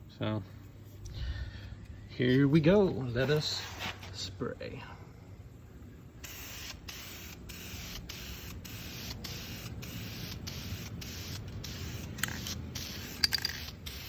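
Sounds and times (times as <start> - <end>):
aerosol spray can hissing: 6.2 - 14.0.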